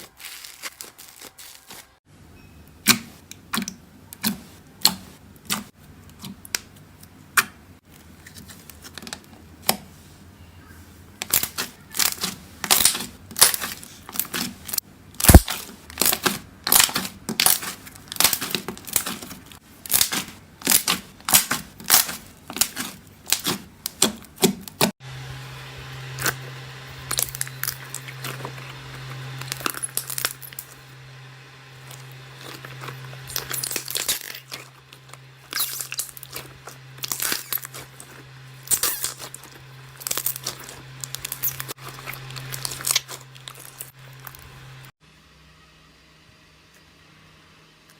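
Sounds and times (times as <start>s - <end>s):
steady low hum: 2.0s - 47.9s
slime squeezed clicking and crackling: 35.5s - 43.8s.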